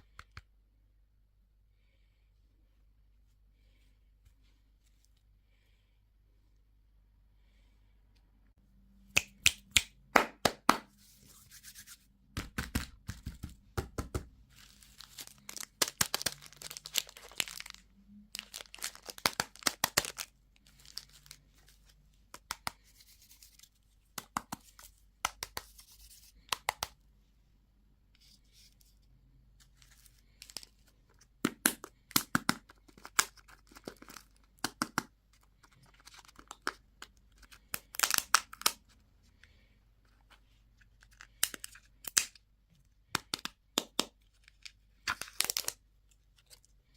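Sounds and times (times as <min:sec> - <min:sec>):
candy wrappers crinkling: 0:14.5 - 0:22.8, 0:31.7 - 0:38.9, 0:44.3 - 0:46.7.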